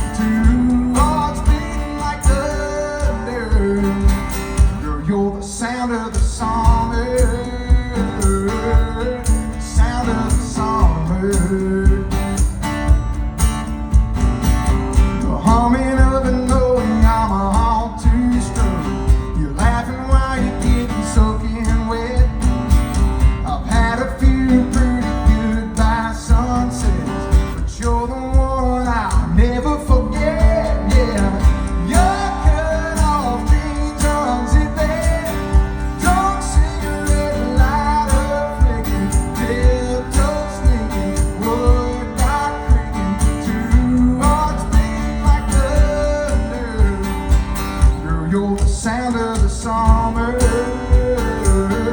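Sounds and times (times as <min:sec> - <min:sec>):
steady beat: 0:00.0 - 0:05.0, 0:06.1 - 0:51.9
person singing: 0:00.0 - 0:12.4, 0:23.4 - 0:51.9
guitar: 0:00.0 - 0:51.9.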